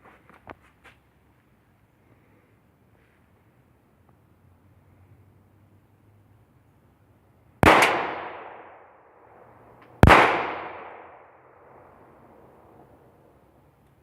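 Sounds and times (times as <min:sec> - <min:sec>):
gunshots echoing: 0:07.6 - 0:09.0, 0:10.0 - 0:11.8.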